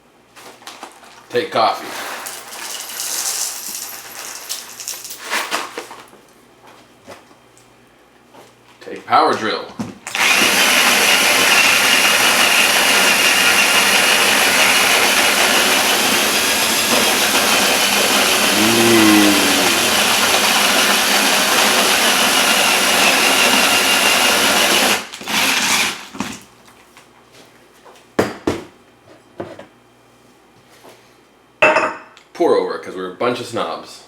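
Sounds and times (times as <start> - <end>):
drill grinding coffee beans: 2.2 - 4.8, 10.1 - 26.2.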